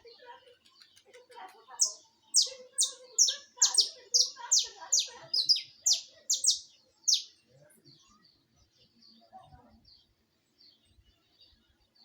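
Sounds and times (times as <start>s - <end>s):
finch singing high notes: 1.8s - 7.3s.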